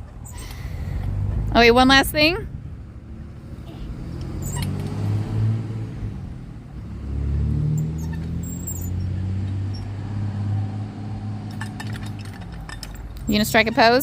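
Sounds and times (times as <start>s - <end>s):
earth-moving machine engine: 6.8s - 14.0s.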